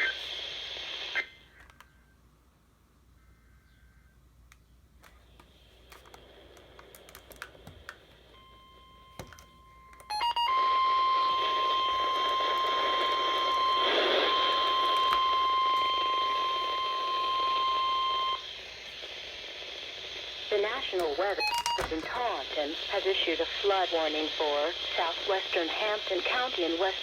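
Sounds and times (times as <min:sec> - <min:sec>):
radio hiss: 0:00.0 - 0:01.8, 0:05.0 - 0:08.3, 0:11.0 - 0:27.0.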